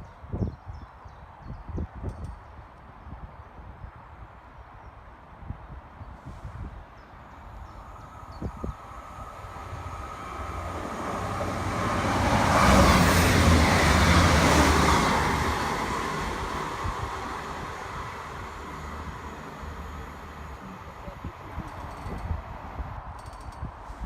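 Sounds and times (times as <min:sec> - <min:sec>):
train passing: 0:06.6 - 0:24.0.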